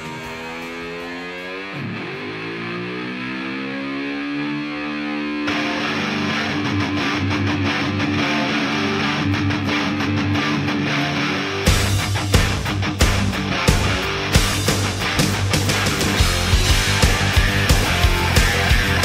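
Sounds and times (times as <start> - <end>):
distorted electric guitar note: 0.0 - 19.0
rock band with drums: 5.2 - 19.0.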